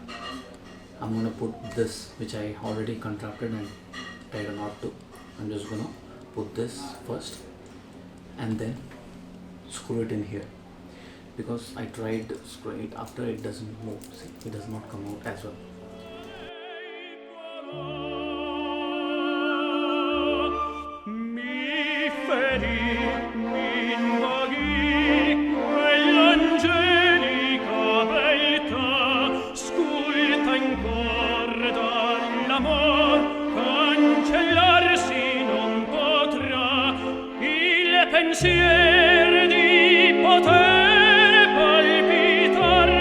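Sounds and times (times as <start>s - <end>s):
orchestra holding chords: 13.1s - 43.0s
opera singer with vibrato: 16.0s - 43.0s.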